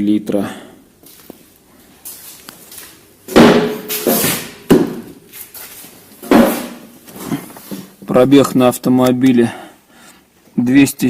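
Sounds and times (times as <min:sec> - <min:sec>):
loud bangs: 0:03.3 - 0:05.0.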